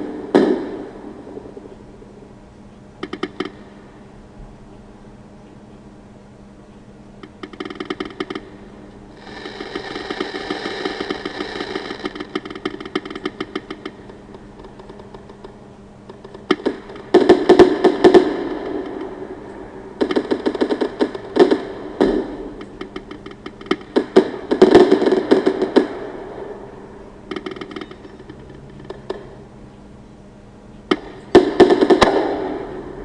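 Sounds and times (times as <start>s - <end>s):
fireworks crackling: 9.1s - 15.3s, 16.1s - 29.3s, 30.9s - 33.0s.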